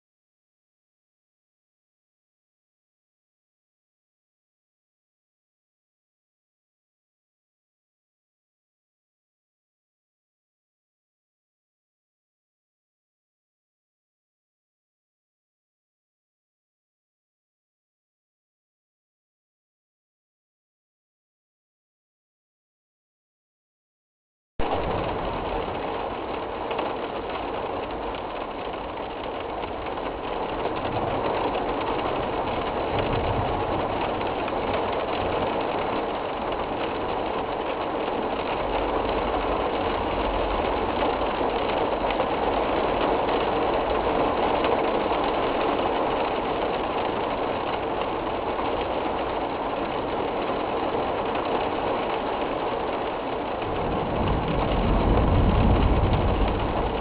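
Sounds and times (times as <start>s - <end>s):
low rumbling wind gusts: 24.6s - 51.2s, 53.0s - 57.0s
heavy rain: 24.6s - 57.0s
strong wind roaring: 30.1s - 35.9s, 53.5s - 57.0s.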